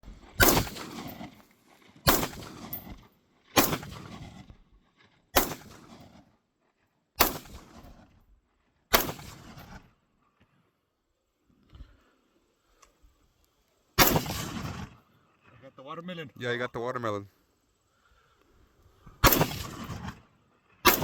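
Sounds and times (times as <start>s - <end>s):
rifle shots echoing: 0.4s - 1.4s, 2.0s - 3.0s, 3.6s - 4.4s, 5.4s - 6.0s, 7.2s - 8.0s, 8.9s - 9.8s, 14.0s - 15.0s, 19.2s - 20.2s.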